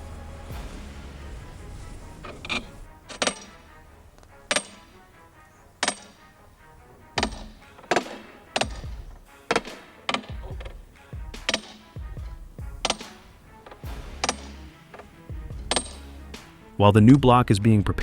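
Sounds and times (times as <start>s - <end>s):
tool striking something solid: 7.2s - 16.6s.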